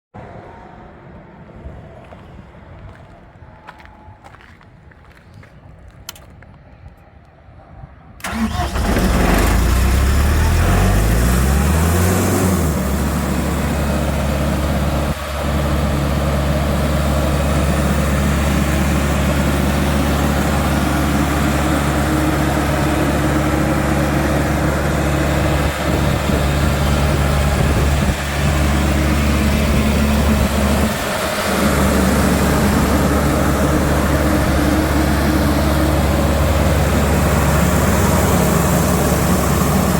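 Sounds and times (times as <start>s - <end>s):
diesel engine starting and running: 8.2s - 39.9s.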